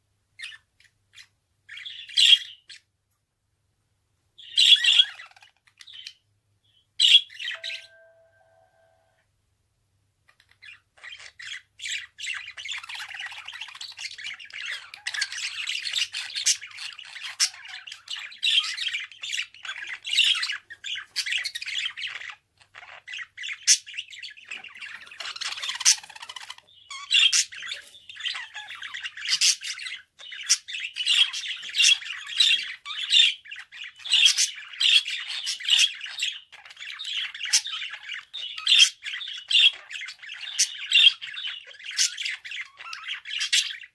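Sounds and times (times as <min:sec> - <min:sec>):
budgerigar warbling and chattering: 0:04.4 - 0:06.2, 0:07.0 - 0:08.2, 0:10.3 - 0:43.9.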